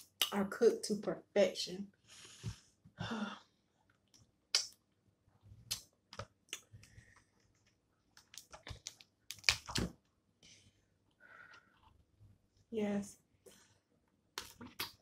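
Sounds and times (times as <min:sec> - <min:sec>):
crab shells cracking: 0:08.2 - 0:09.9.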